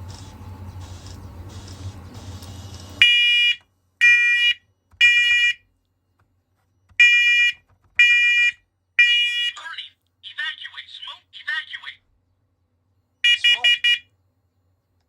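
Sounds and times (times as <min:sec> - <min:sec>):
low hum: 0:00.0 - 0:03.4
smoke alarm beeping: 0:00.8 - 0:05.6, 0:07.0 - 0:09.4, 0:13.2 - 0:14.0.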